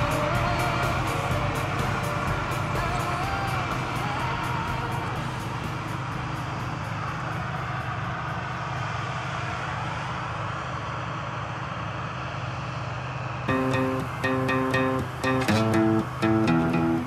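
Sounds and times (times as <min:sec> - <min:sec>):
diesel engine drone: 0:00.0 - 0:17.0
song beat: 0:13.5 - 0:17.0.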